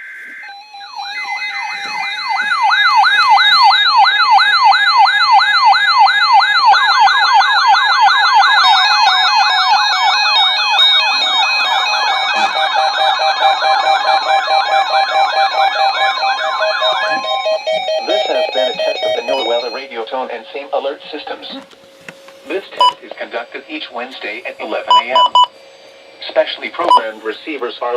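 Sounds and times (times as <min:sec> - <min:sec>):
steady beeping tones: 0:00.0 - 0:21.4, 0:22.5 - 0:27.9
warbling siren alert tones: 0:00.0 - 0:21.4.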